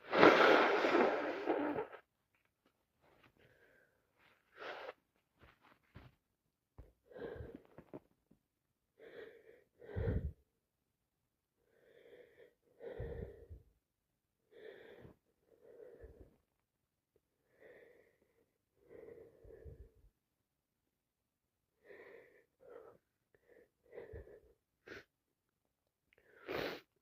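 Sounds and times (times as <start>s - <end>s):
person sneezing: 0.0s - 2.0s.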